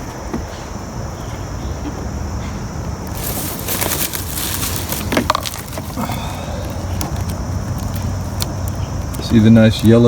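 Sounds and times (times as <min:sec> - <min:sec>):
steady background hiss: 0:00.0 - 0:10.0
plastic bottles crinkling: 0:03.0 - 0:10.0.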